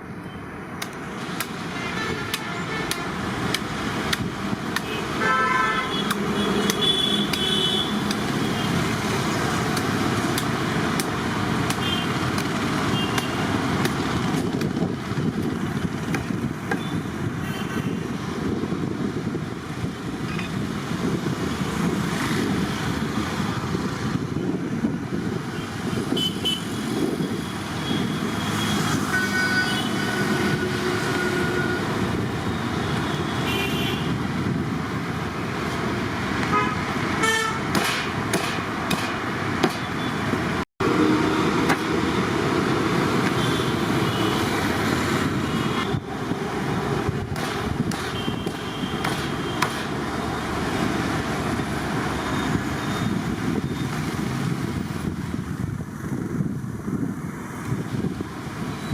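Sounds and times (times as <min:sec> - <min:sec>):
street traffic rumbling: 0:00.0 - 0:58.9
vehicle horns honking: 0:01.7 - 0:03.2, 0:04.8 - 0:08.8, 0:11.7 - 0:12.2, 0:12.9 - 0:13.5, 0:26.1 - 0:26.8, 0:27.8 - 0:31.9, 0:32.9 - 0:34.2, 0:36.5 - 0:37.8, 0:48.1 - 0:49.7.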